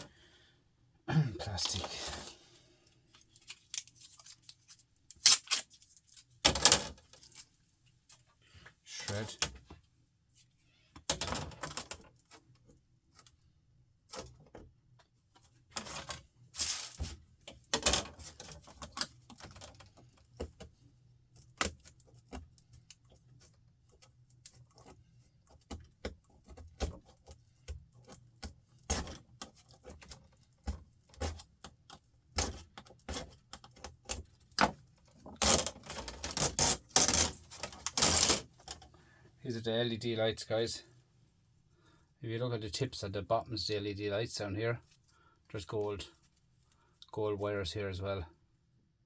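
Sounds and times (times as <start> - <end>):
clatter of laptop parts: 3.1 - 8.2, 14.0 - 38.9.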